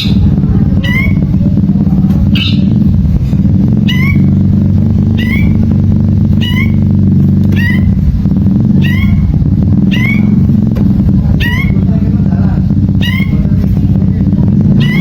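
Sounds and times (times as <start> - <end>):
low hum: 0.0 - 15.0
bird harsh call: 2.3 - 2.8, 5.1 - 5.8, 6.4 - 6.9, 14.8 - 15.0.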